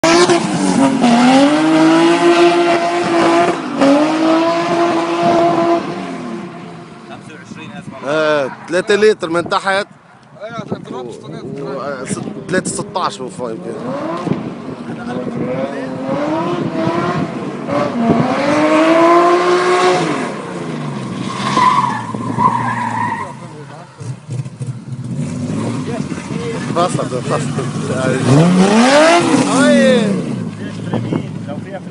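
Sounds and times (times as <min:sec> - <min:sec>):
car engine revving hard: 0:00.0 - 0:06.7, 0:13.6 - 0:22.8, 0:24.0 - 0:31.5.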